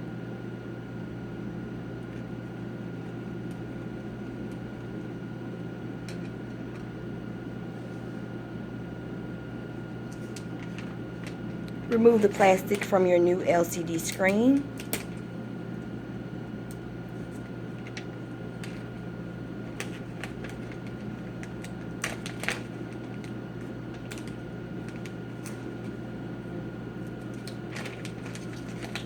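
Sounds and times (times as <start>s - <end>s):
low electrical hum: 0.0s - 29.0s
plastic clicking and crackling: 10.1s - 11.6s, 17.8s - 18.9s, 19.6s - 26.0s, 27.1s - 29.0s.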